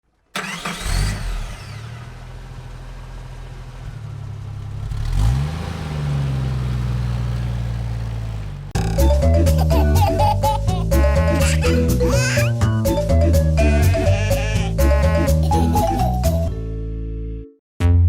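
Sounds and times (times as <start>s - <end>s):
vehicle engine starting and revving: 0.1s - 12.1s.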